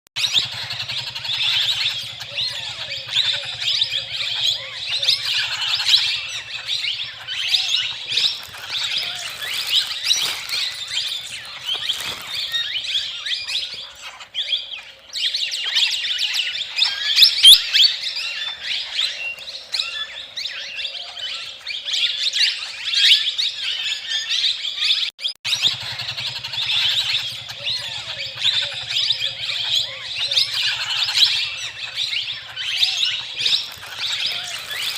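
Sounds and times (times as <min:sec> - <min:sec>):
flock of birds chirping: 0:00.2 - 0:34.9.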